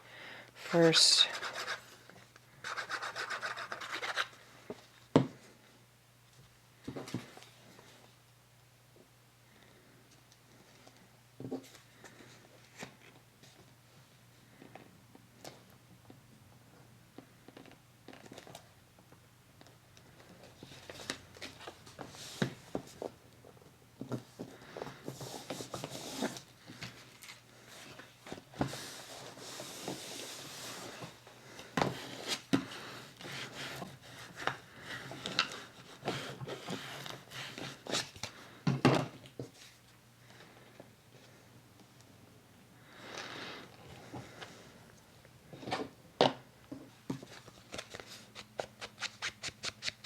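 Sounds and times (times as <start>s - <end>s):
paper rustling and rubbing: 1.3s - 1.9s, 2.6s - 4.4s, 47.2s - 50.0s.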